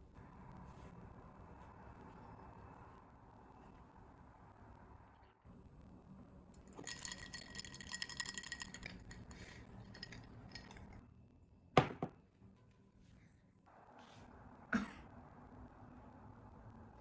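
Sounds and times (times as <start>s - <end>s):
small metal objects jingling: 6.6s - 11.0s.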